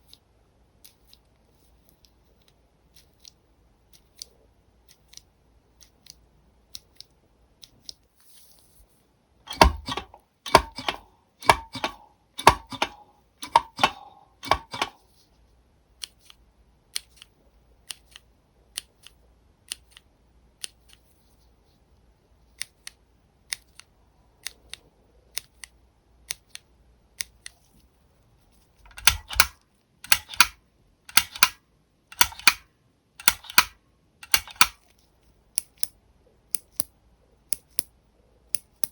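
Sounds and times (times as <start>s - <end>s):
loud deep keyboard switch clacks: 9.5s - 15.0s, 28.9s - 31.6s, 32.2s - 32.6s, 33.2s - 34.8s.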